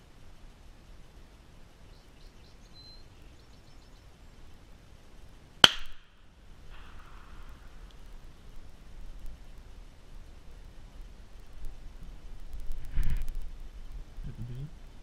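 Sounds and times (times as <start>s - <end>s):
faint high chirps: 1.8s - 4.4s
shotgun shot: 5.6s - 6.1s.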